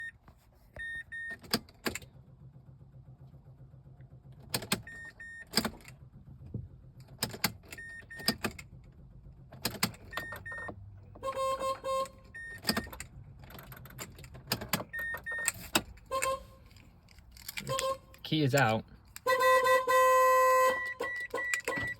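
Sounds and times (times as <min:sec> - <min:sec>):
short electronic beeps: 0:00.8 - 0:01.4, 0:10.1 - 0:10.7, 0:12.4 - 0:12.9, 0:14.9 - 0:15.6, 0:20.7 - 0:21.9
car warning chimes: 0:00.8 - 0:01.7, 0:04.6 - 0:05.7, 0:07.4 - 0:08.6, 0:09.8 - 0:13.0, 0:14.5 - 0:16.7, 0:17.6 - 0:21.9
ignition key clicks: 0:04.4 - 0:06.0, 0:07.0 - 0:08.7, 0:09.6 - 0:19.6, 0:20.6 - 0:21.9.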